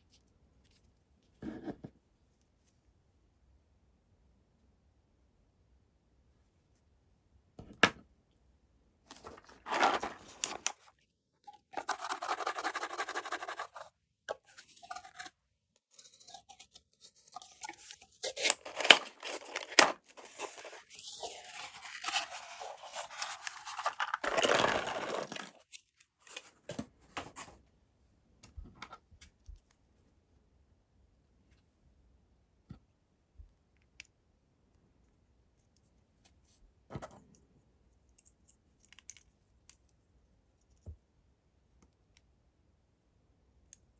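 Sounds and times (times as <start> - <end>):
packaging tearing and crinkling: 9.2 - 10.8, 17.6 - 25.7.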